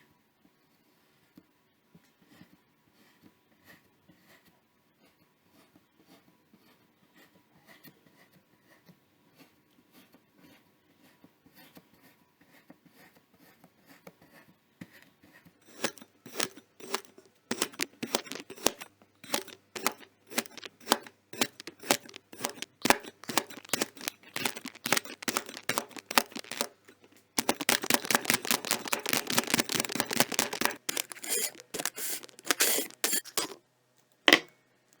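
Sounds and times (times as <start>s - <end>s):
kinetic sand crunching: 15.7s - 33.6s.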